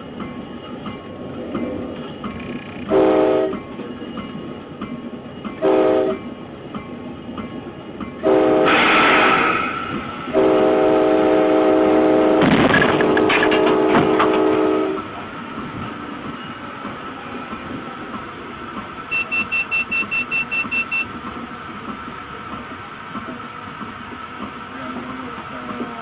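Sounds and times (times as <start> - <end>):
rumble of moving train: 0.0 - 26.0
locomotive air horn blasts: 2.9 - 3.6, 5.6 - 6.2, 8.2 - 9.4, 10.3 - 15.0
harsh burst of noise: 8.6 - 10.0.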